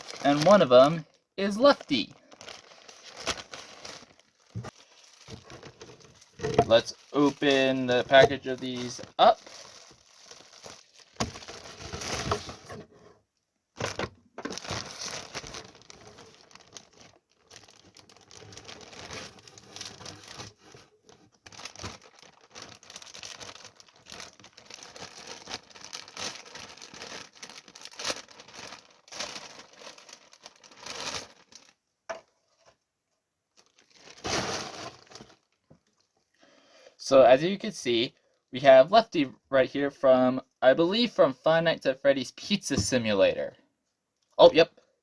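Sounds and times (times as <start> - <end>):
packaging tearing and crinkling: 0.0 - 12.7, 13.8 - 31.8, 33.6 - 35.6.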